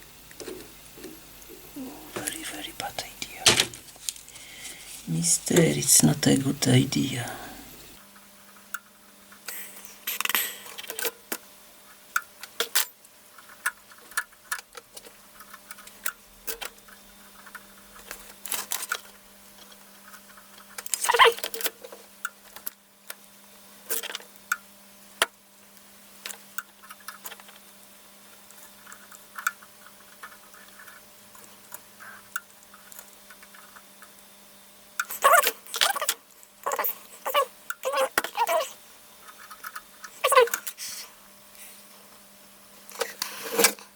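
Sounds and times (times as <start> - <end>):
steady low hum: 0.0 - 8.0.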